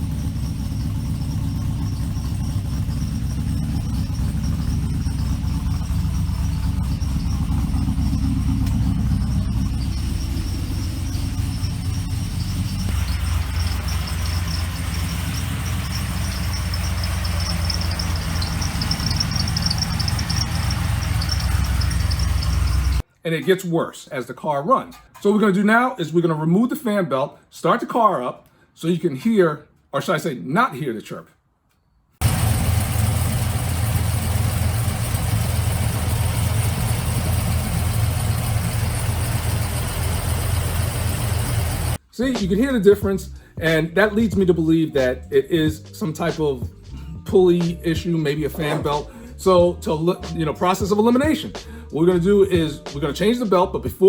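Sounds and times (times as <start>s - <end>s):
engine idling hum: 0.0s - 23.0s, 32.2s - 53.8s
high-pitched belt chirping: 0.0s - 23.0s.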